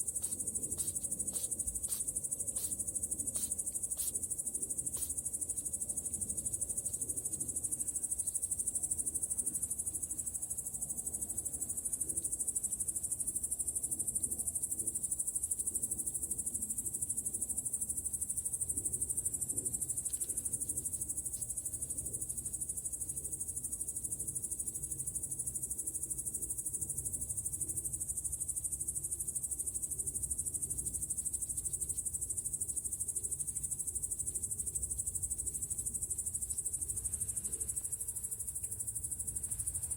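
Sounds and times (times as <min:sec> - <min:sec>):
insects chirring: 0:00.0 - 0:06.3, 0:31.2 - 0:39.9.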